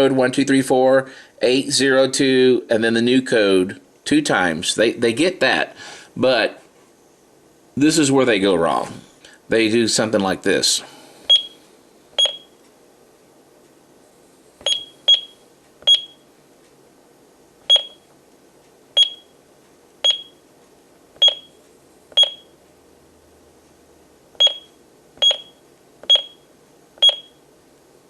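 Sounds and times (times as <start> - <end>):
keypad beeps: 11.3 - 11.6, 12.2 - 12.6, 14.6 - 16.2, 17.7 - 18.1, 19.0 - 19.3, 20.0 - 20.4, 21.2 - 22.5, 24.4 - 26.4, 27.0 - 27.4.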